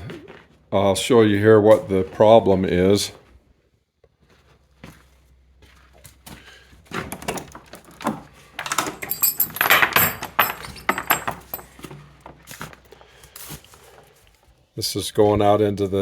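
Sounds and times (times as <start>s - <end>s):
door latch rattling and clicking: 7.0s - 11.6s.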